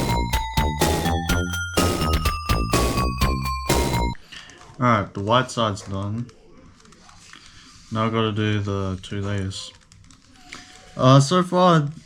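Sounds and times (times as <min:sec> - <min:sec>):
upbeat video game music: 0:00.0 - 0:04.2.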